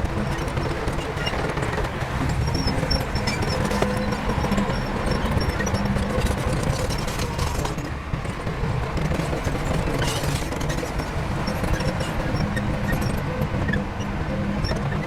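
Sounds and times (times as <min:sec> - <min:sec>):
diesel machinery engine rumble: 0:00.0 - 0:15.0
clattering and clicks: 0:09.0 - 0:13.9.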